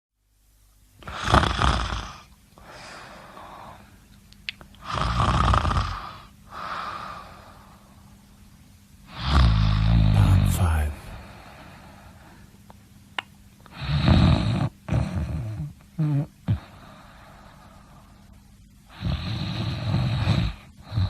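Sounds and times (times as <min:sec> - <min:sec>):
quiet breath: 0:02.6 - 0:04.1, 0:06.0 - 0:08.2, 0:11.0 - 0:12.6, 0:16.6 - 0:19.0
person snoring: 0:09.1 - 0:11.6.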